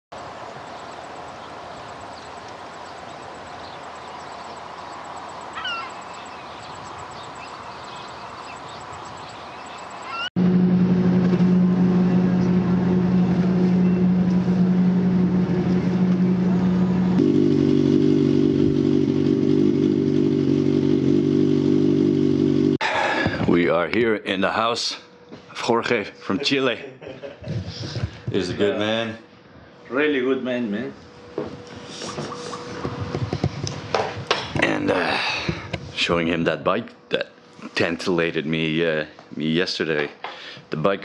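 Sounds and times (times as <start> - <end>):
faint chirps: 0.2 - 10.3
motorcycle engine running: 10.4 - 22.8, 32.6 - 34.3.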